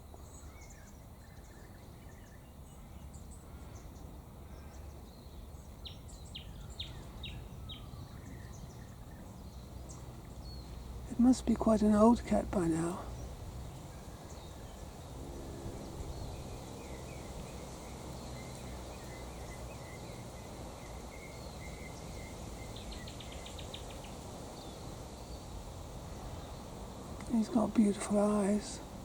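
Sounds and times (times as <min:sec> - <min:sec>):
small birds chirping: 0:00.0 - 0:29.0.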